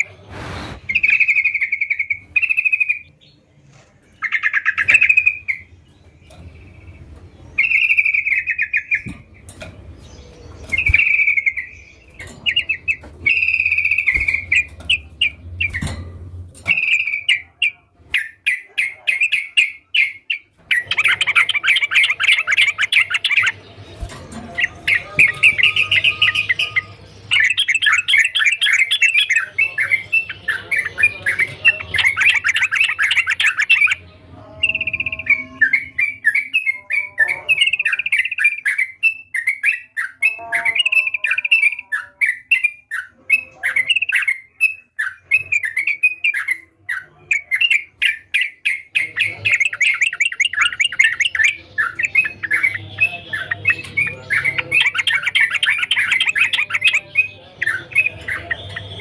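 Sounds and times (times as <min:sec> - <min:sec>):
bird bubbly chattering song: 0:18.2 - 0:24.0, 0:24.6 - 0:34.0, 0:34.6 - 0:59.0.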